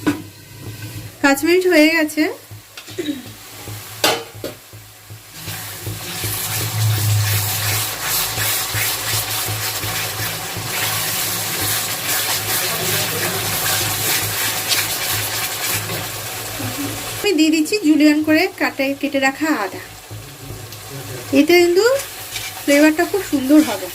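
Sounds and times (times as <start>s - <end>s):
masala sizzling in a pan: 0.0s - 23.9s
spatula scraping a pan: 5.1s - 16.2s, 21.5s - 23.9s.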